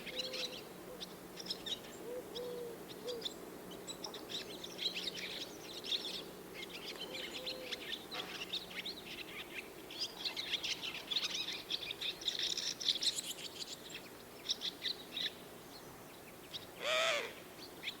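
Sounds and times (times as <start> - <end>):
loud bird call: 16.8 - 17.4.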